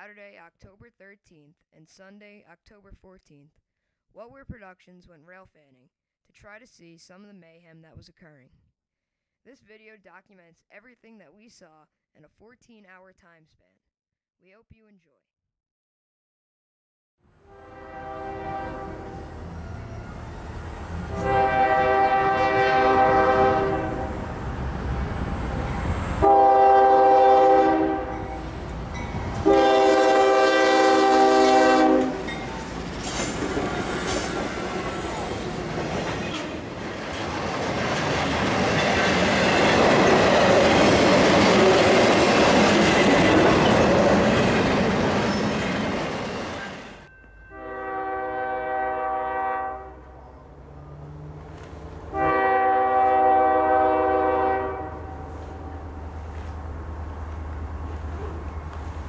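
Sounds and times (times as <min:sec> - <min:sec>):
locomotive air horn blasts: 0:17.4 - 0:24.4, 0:26.2 - 0:28.6, 0:29.4 - 0:32.4, 0:47.5 - 0:50.3, 0:51.8 - 0:56.0
train passing with rail clatter: 0:17.7 - 0:59.0.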